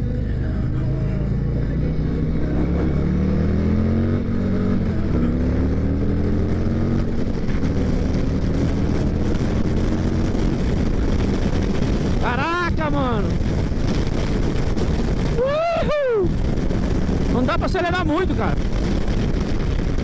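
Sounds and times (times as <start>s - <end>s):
motorcycle engine revving: 0.0s - 15.4s, 16.2s - 20.0s.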